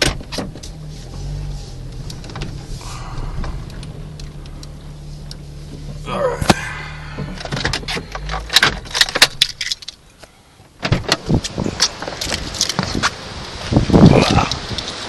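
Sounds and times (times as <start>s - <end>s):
car engine running: 0.0s - 13.8s
clicks knocks and rattles: 7.2s - 10.0s.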